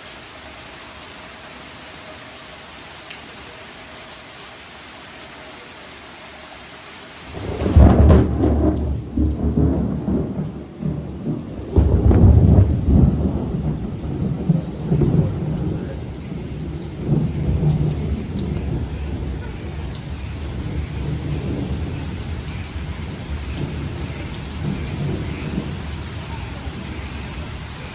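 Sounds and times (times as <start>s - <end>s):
steady rain: 0.0s - 27.9s
thunder rumbling: 7.3s - 27.9s.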